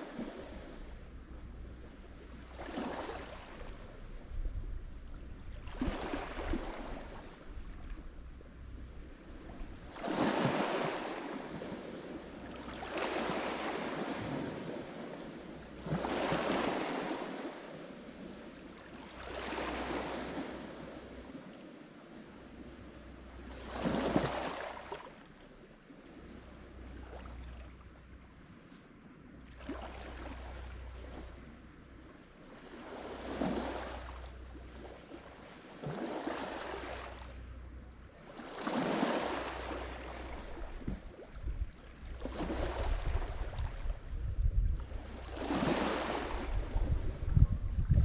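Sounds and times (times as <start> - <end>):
waves breaking on shore: 0.0 - 1.0, 1.9 - 4.2, 5.3 - 8.1, 9.1 - 28.0, 29.4 - 31.6, 32.2 - 37.5, 38.2 - 48.0
low rumble of surf: 0.0 - 48.0
wind buffeting microphone: 2.9 - 12.4, 40.4 - 48.0.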